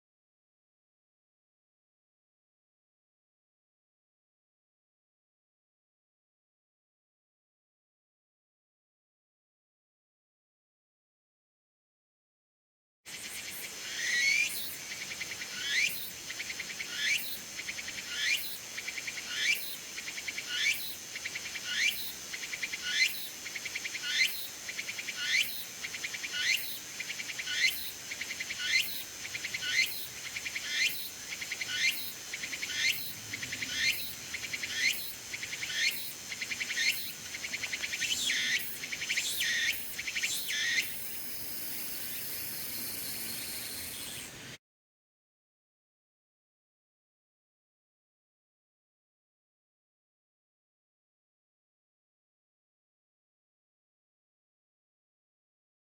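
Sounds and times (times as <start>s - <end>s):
cicada high drone: 13.1s - 44.5s
cicada rising call: 13.1s - 44.6s.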